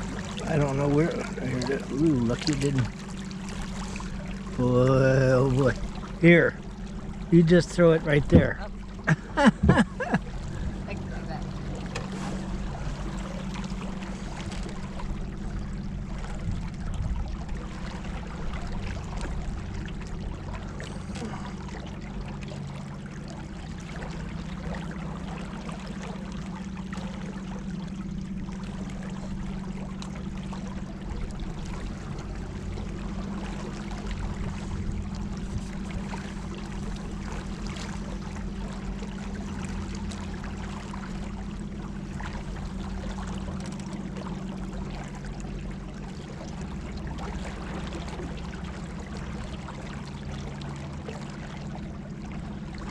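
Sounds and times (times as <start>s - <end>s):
boat motor humming: 0.0s - 52.9s
water sloshing along boat hull: 0.0s - 52.9s.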